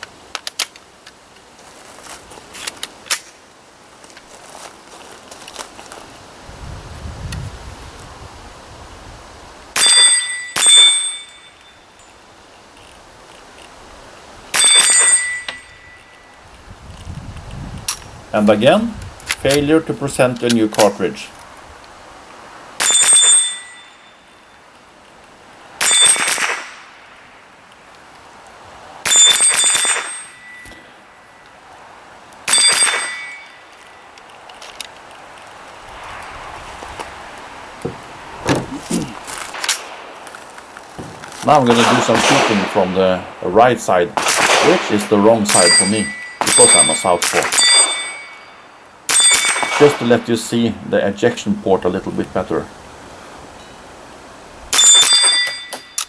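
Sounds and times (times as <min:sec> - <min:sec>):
steel target ringing: 0:09.8 - 0:12.0, 0:14.5 - 0:16.3, 0:22.8 - 0:24.5, 0:29.1 - 0:31.2, 0:32.5 - 0:34.0, 0:45.2 - 0:50.2, 0:54.7 - 0:56.0
rifle shots: 0:25.8 - 0:26.9, 0:32.5 - 0:33.4, 0:41.0 - 0:43.3, 0:44.1 - 0:48.4, 0:49.1 - 0:50.3.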